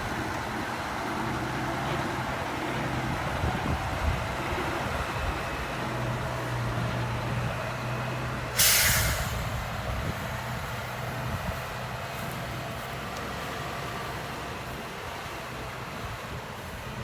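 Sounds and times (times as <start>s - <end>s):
bulldozer diesel engine running: 0.0s - 17.0s
loud hiss of air: 8.6s - 10.2s.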